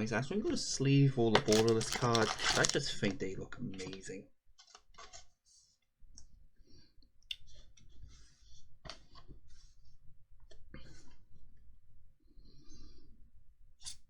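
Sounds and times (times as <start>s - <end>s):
cards rustling in plastic sleeves: 1.3s - 3.2s.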